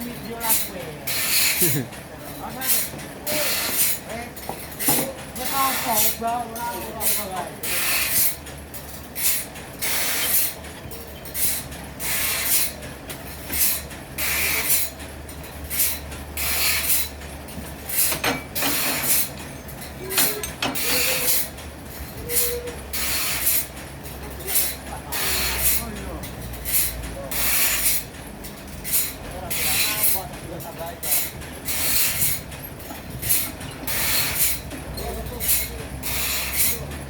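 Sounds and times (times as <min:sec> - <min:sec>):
saw rasping through wood: 0:00.4 - 0:01.9, 0:02.6 - 0:04.1, 0:04.8 - 0:06.2, 0:06.9 - 0:08.4, 0:09.2 - 0:10.6, 0:11.4 - 0:12.8, 0:13.5 - 0:15.0, 0:15.7 - 0:17.2, 0:17.9 - 0:19.3, 0:20.7 - 0:21.6, 0:22.4 - 0:23.8, 0:24.5 - 0:28.1, 0:28.8 - 0:30.3, 0:31.0 - 0:32.5, 0:33.2 - 0:37.0.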